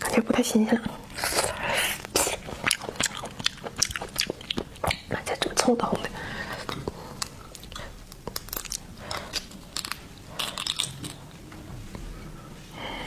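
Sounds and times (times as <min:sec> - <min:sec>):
chewing and biting seafood: 0:01.1 - 0:11.4
wet mouth clicks: 0:02.0 - 0:11.2
small crunches: 0:06.7 - 0:11.2.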